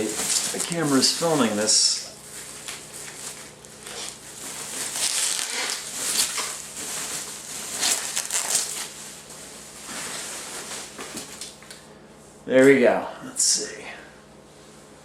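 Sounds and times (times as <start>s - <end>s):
packaging rustling and crinkling: 0.0s - 11.7s.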